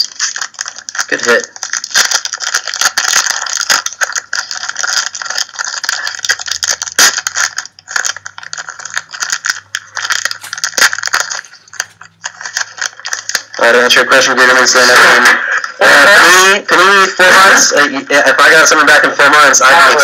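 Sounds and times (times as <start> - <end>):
foil wrappers crinkling: 0.0 - 15.8.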